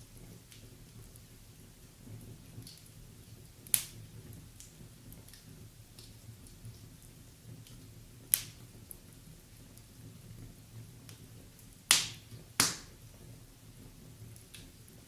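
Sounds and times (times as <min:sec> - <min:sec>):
fire crackling with pops: 0:00.0 - 0:15.0.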